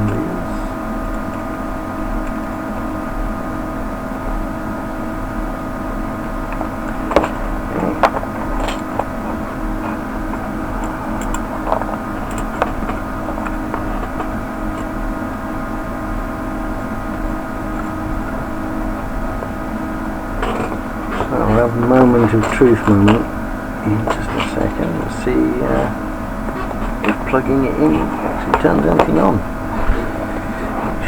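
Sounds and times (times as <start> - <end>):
steady machine hum: 0.0 - 31.0.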